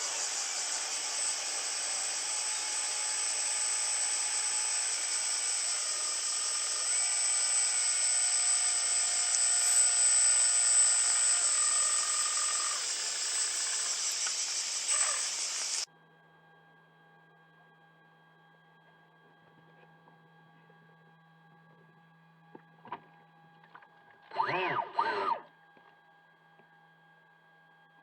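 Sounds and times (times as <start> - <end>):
model boat motor whine and hiss: 0.0 - 15.9.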